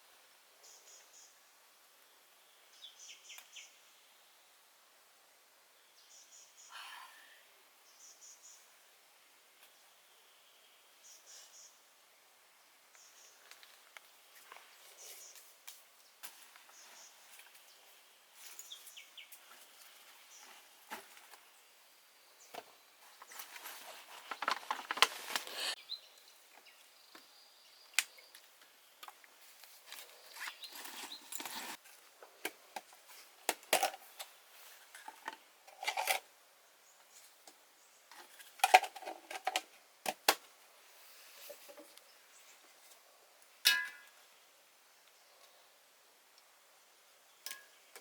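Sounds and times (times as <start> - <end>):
faint steady hiss: 0.0 - 48.0
small objects handled: 29.0 - 36.2.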